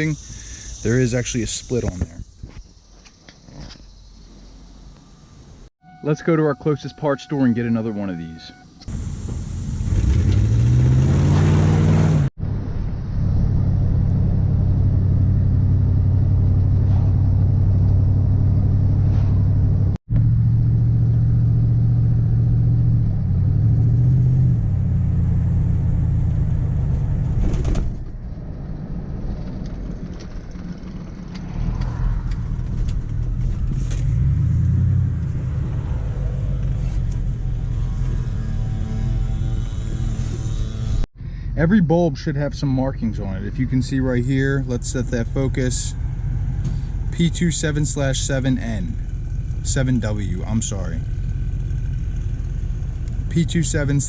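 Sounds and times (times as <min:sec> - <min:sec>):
truck engine accelerating: 0:08.8 - 0:41.1.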